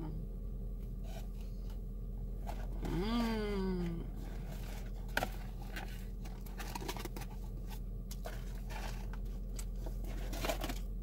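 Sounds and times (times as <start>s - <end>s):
steady low hum: 0.0s - 11.0s
crunching and chewing: 4.1s - 11.0s
food packaging rustling: 4.2s - 10.9s.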